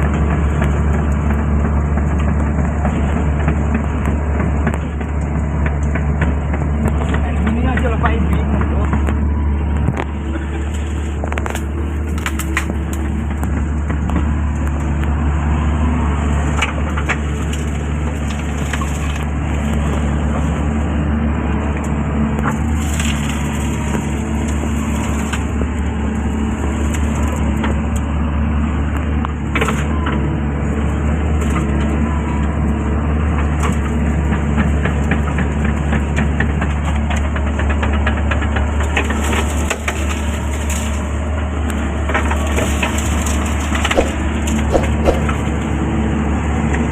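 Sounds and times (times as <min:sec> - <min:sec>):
excavator diesel engine running: 0:00.0 - 0:46.9
sharp cracks and snaps: 0:11.2 - 0:15.2, 0:42.2 - 0:45.6.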